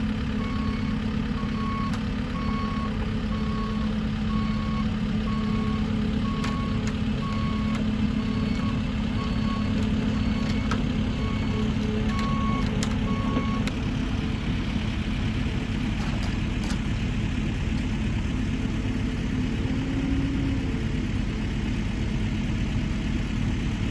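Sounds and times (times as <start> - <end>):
excavator diesel engine running: 0.0 - 23.9
motion alarm beeping: 1.6 - 13.7.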